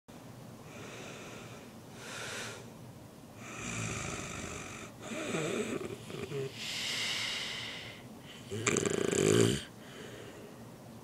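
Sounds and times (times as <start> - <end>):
person snoring: 3.4 - 10.2.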